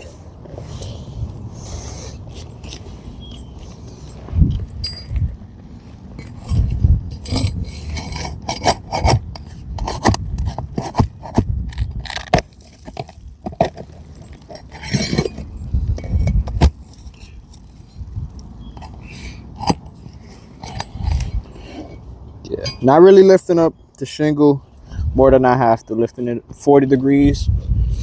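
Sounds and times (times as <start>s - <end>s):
metal tool clinking on shingles: 3.9s - 5.3s, 12.0s - 23.2s
metal tool scraping: 5.8s - 11.4s, 12.0s - 23.0s.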